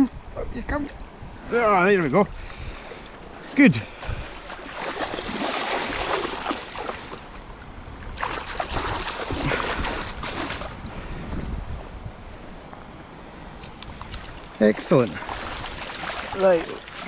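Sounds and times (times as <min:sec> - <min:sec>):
water splashing and sloshing: 0:02.0 - 0:11.0, 0:13.4 - 0:17.0.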